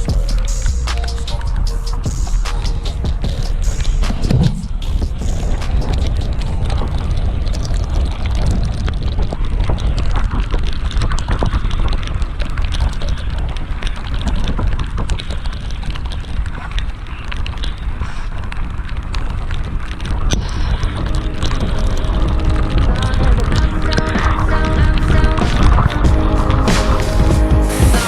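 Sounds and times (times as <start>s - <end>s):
wind buffeting microphone: 2.9s - 17.0s, 17.7s - 27.2s.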